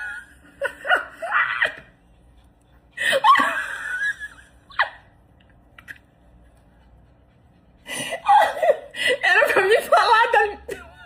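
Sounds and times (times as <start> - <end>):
person laughing: 3.0 - 5.1.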